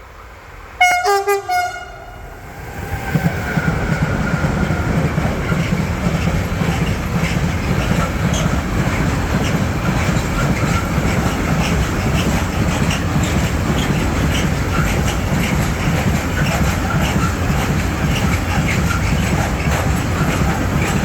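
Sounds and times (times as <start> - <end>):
model train rumbling on track: 0.0 - 21.0
model train horn: 0.8 - 2.2
wheels clicking over rail joints: 3.6 - 21.0.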